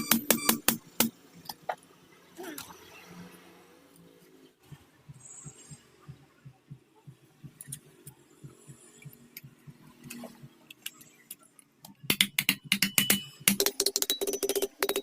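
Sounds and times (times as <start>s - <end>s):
sharp metallic clicks and taps: 4.6s - 15.0s.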